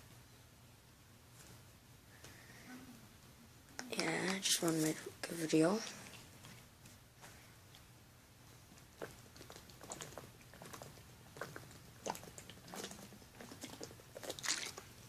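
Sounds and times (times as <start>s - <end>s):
faint low hum: 0.0s - 15.0s
small clicks and crackles: 8.7s - 14.9s.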